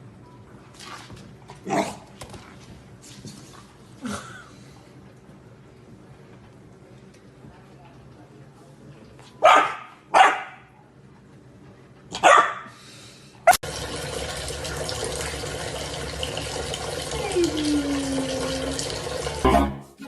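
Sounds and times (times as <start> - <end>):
dog barking: 9.4 - 10.7, 12.1 - 12.7
water running from a tap: 13.6 - 19.5.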